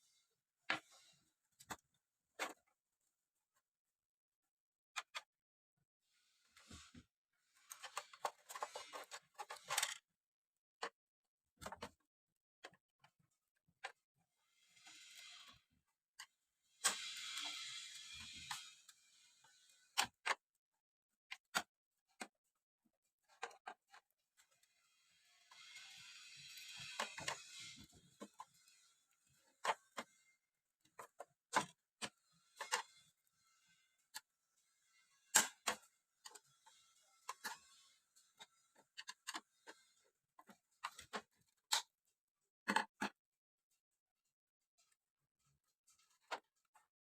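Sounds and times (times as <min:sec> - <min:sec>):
hiss: 0:16.8 - 0:18.8.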